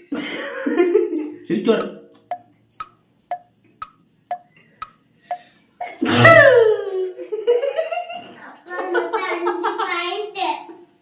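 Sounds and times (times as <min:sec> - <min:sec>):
light ticking: 0:01.8 - 0:05.5
loud sneeze: 0:06.0 - 0:06.6.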